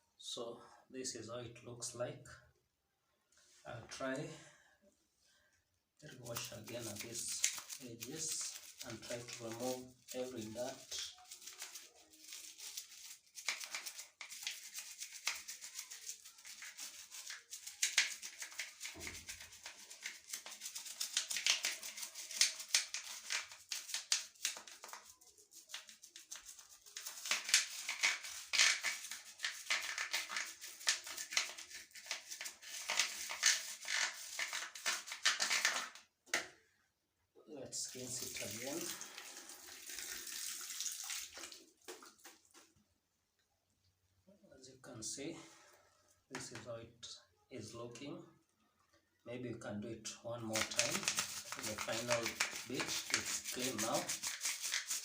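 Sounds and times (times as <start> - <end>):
brush scrubbing plastic: 6.1 - 36.0, 50.4 - 55.0.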